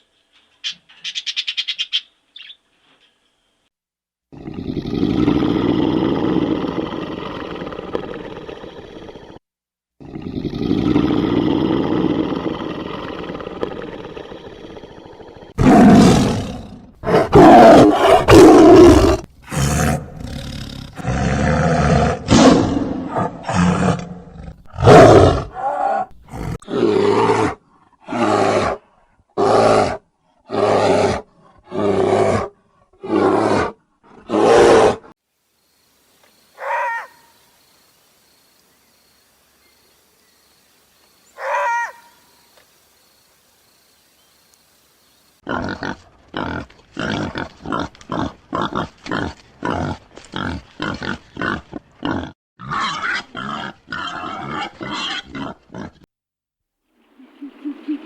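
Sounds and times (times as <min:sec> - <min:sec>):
loud animal calls: 0:36.6 - 0:37.3, 0:41.4 - 0:42.2.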